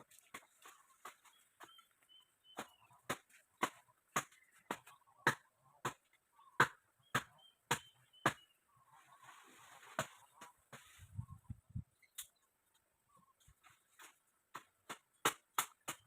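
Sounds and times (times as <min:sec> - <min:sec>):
faint bird chirps: 0:04.3 - 0:13.6.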